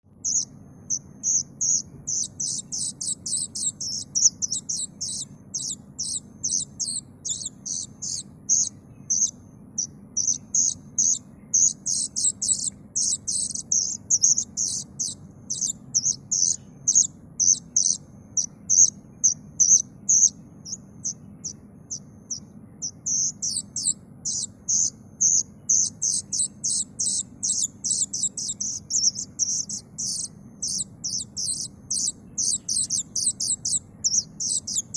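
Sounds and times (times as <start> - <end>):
faint low hum: 0.1 - 34.9
young cuckoo begging calls: 0.2 - 34.9.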